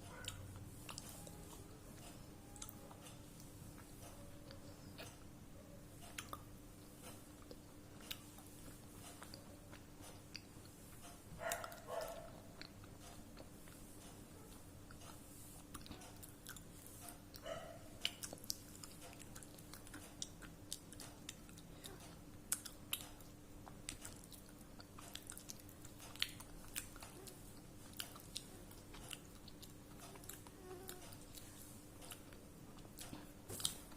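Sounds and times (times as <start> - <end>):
person chewing crunchy clay: 14.9 - 33.9.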